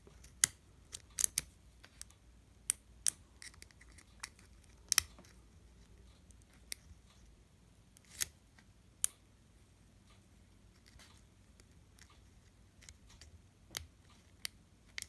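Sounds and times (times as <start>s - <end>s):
lock picks clicking and scraping: 0.2s - 2.1s, 2.7s - 5.4s, 8.0s - 8.4s.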